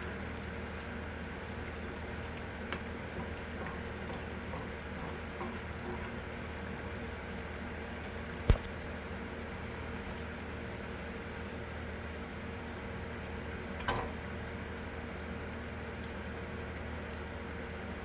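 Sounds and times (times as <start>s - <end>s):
small pops and crackles: 8.5s - 8.8s.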